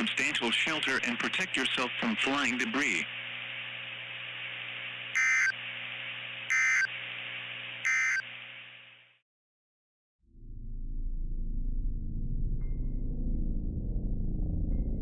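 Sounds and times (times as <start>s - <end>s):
radio hiss: 0.0s - 9.2s
digital data tone bursts: 5.2s - 5.6s, 6.5s - 6.9s, 7.8s - 8.3s
low hum: 10.3s - 15.0s.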